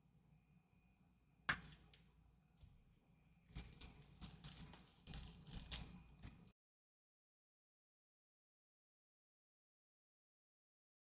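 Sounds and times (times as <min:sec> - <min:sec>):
wrappers crinkling and rustling: 0:03.6 - 0:06.5.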